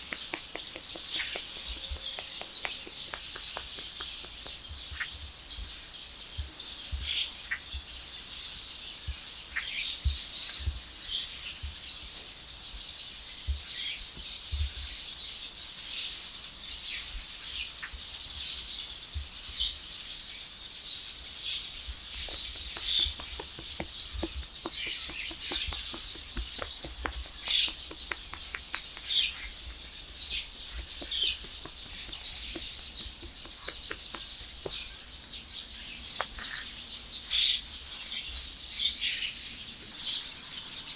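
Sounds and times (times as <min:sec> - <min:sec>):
small birds chirping: 0:00.0 - 0:40.9.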